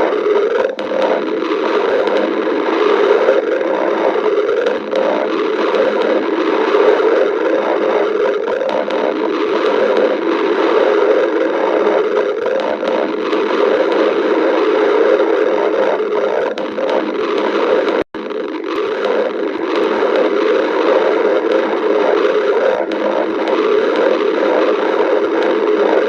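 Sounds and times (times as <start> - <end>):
stomach growling: 0.0 - 26.0.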